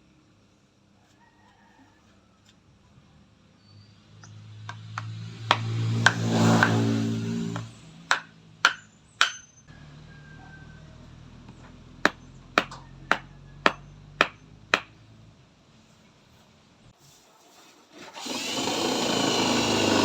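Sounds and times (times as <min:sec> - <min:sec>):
hammer striking: 0:04.7 - 0:09.6, 0:12.0 - 0:15.0.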